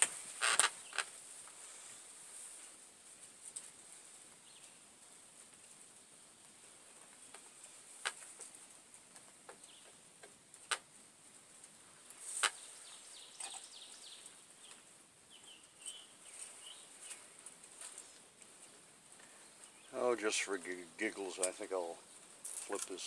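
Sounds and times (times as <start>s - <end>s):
faint steady hiss: 0.0s - 23.0s
bird chirps: 12.3s - 17.3s.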